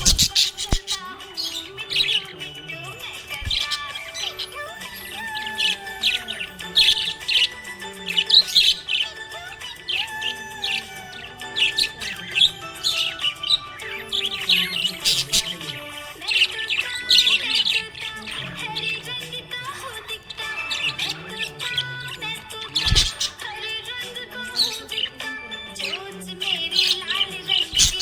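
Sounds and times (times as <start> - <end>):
background music with held notes: 0.0 - 28.0
budgerigars chirping: 0.0 - 28.0.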